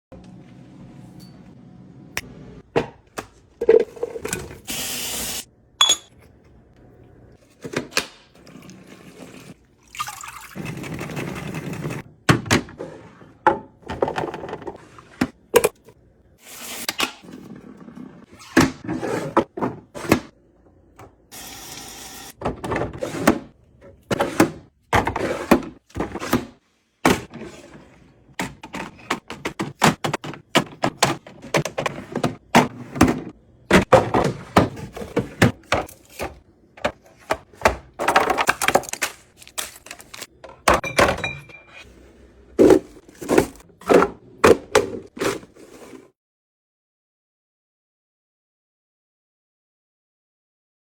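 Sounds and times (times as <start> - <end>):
running or pouring water: 8.5 - 10.7.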